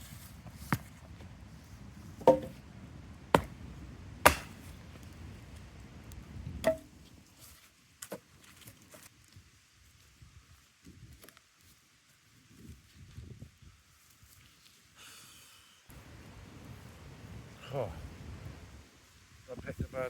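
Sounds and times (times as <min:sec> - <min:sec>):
firewood chopping strikes: 0:02.2 - 0:02.6, 0:03.4 - 0:03.6, 0:04.2 - 0:04.7, 0:06.6 - 0:06.9.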